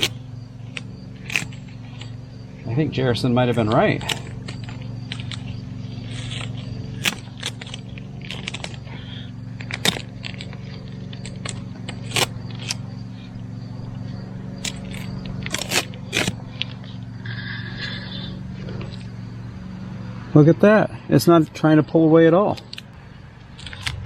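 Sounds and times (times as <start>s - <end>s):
low hum: 0.0s - 24.0s
tape peeling off foam: 9.6s - 12.8s, 14.6s - 18.1s.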